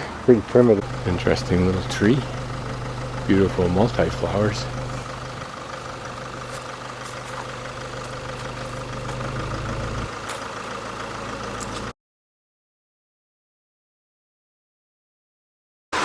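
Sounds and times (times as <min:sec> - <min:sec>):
engine running with low hum: 0:00.0 - 0:11.9.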